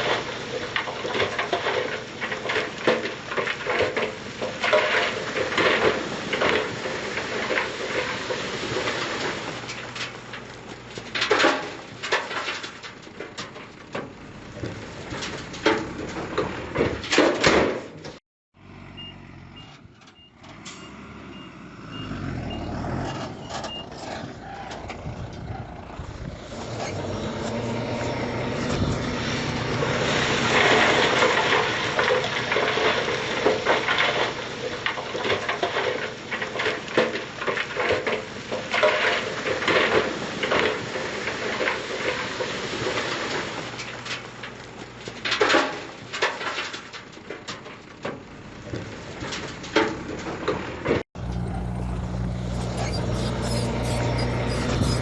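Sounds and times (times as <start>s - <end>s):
truck rattling: 0.0s - 18.2s, 22.0s - 55.0s
diesel engine revving: 20.4s - 33.4s, 50.0s - 55.0s.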